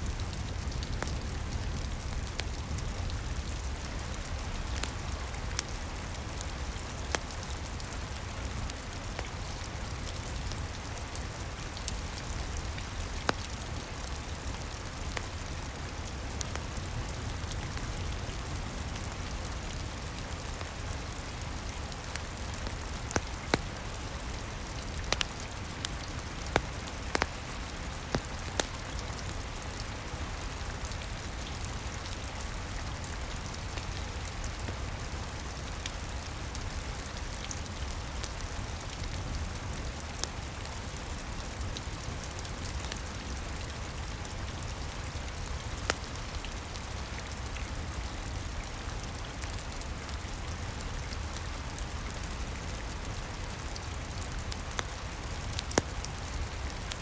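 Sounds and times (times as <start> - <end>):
steady rain: 0.0 - 57.0
wood fire crackling and popping: 0.2 - 32.5, 45.7 - 46.6, 53.7 - 56.9.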